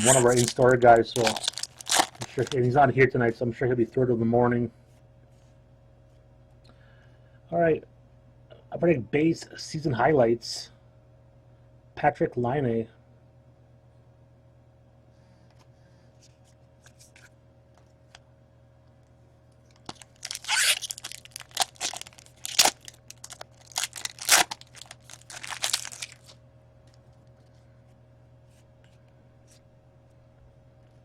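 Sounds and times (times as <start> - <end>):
wrapper tearing and crinkling: 0.0 - 2.7, 19.8 - 26.4.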